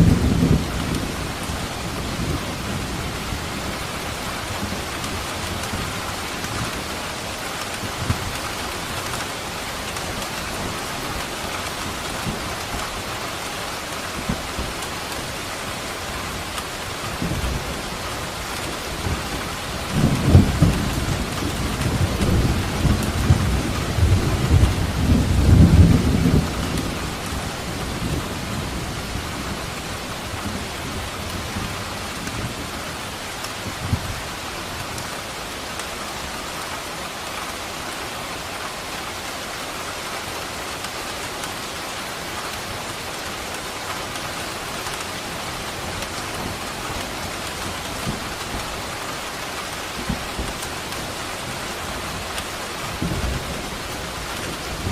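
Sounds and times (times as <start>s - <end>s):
thunder rumbling: 0.0s - 6.8s, 17.1s - 32.8s, 49.9s - 54.9s
steady rain falling: 0.0s - 54.9s.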